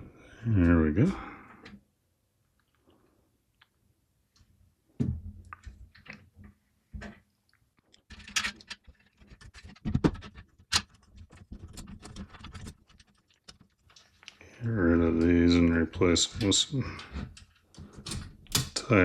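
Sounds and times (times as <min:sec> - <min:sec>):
computer parts clicking and knocking: 0:08.0 - 0:14.2, 0:16.0 - 0:18.9.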